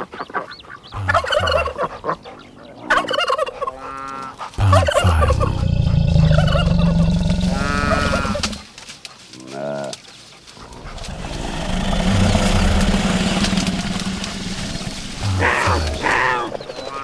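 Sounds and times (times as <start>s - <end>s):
animal calls: 0.0s - 8.7s, 10.6s - 17.0s
low rough animal sound: 0.9s - 2.0s, 3.8s - 8.6s, 10.6s - 17.0s.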